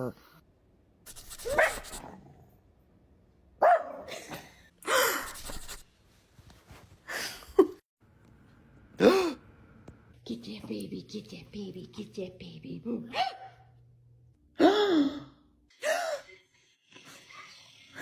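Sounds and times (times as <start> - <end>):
dog barking: 1.1 - 2.1, 3.6 - 4.1, 13.1 - 13.7.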